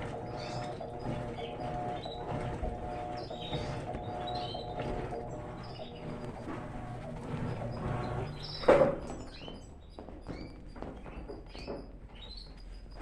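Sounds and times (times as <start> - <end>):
washing machine agitating: 0.0 - 10.4
birds chirping: 0.0 - 12.6
washing machine thunk: 7.6 - 9.2.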